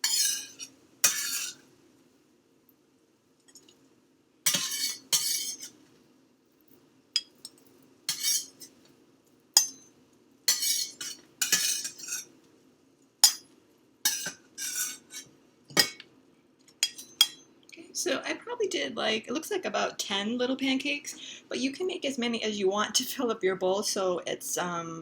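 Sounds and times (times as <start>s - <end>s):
spatula scraping a pan: 0.0s - 1.6s, 4.5s - 5.8s, 8.1s - 8.7s, 10.5s - 12.3s, 14.1s - 15.3s
faint steady hum: 0.0s - 25.0s.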